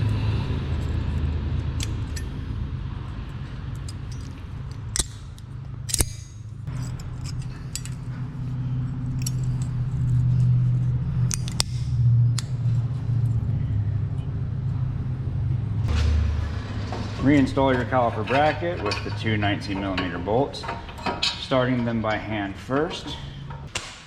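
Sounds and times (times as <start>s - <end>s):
low vehicle rumble: 0.0s - 23.7s
metallic clinks of brake parts: 1.8s - 2.4s, 3.4s - 13.4s.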